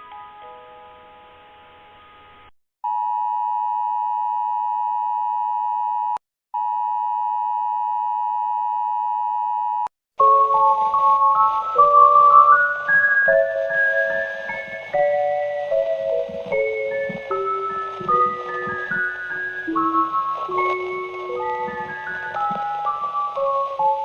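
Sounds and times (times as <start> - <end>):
glockenspiel-like mallet tune: 10.2 - 24.0.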